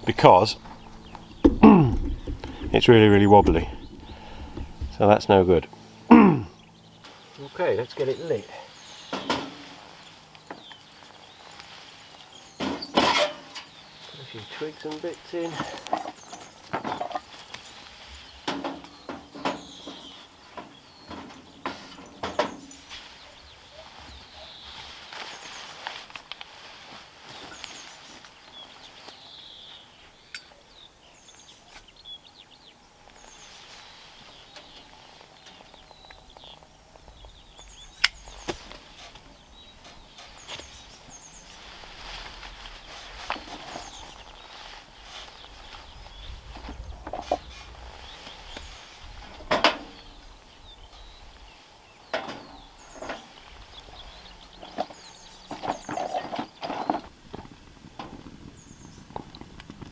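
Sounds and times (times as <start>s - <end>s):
kindling cracking in stove: 0.0s - 6.5s
birds singing: 0.0s - 26.1s, 27.2s - 59.9s.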